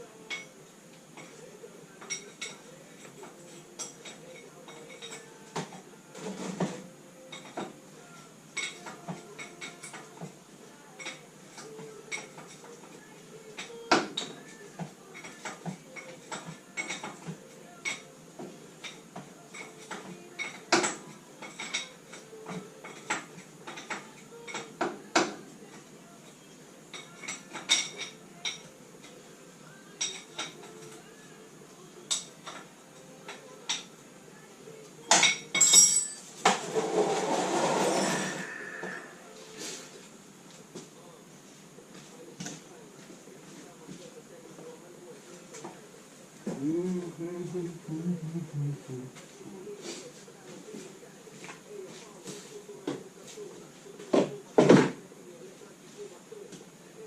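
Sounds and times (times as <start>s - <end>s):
metal hand tools clinking: 35.2s - 36.3s.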